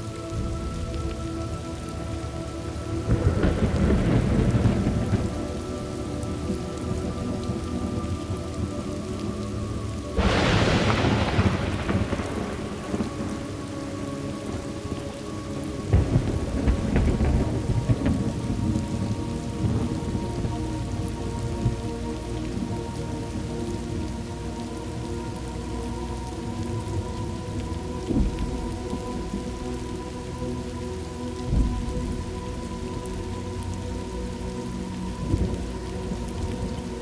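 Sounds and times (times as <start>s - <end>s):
steady rain: 0.0s - 37.0s
thunder rumbling: 0.0s - 37.0s
sharp thunder clap: 10.2s - 13.7s.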